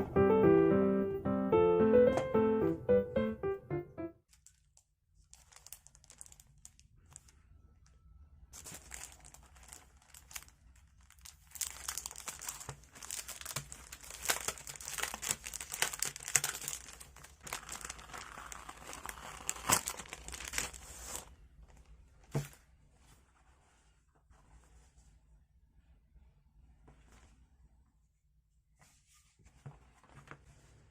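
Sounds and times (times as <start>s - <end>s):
packaging crinkling and tearing: 4.3s - 7.4s, 8.6s - 21.3s.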